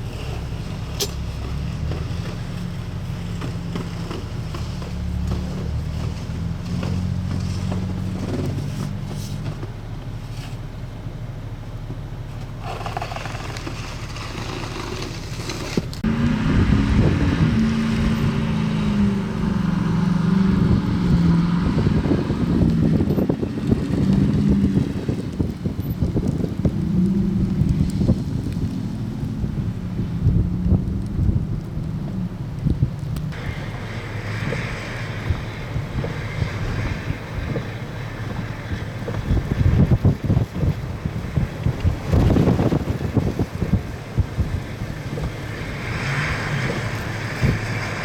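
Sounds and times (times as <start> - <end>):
vehicle engine and road noise: 0.0 - 48.0
wind on microphone: 15.7 - 48.0.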